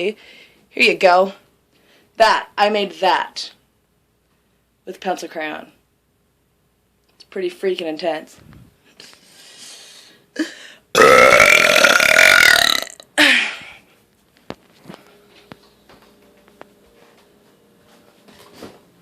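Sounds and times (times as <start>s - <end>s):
woman burping loudly: 10.9s - 13.5s.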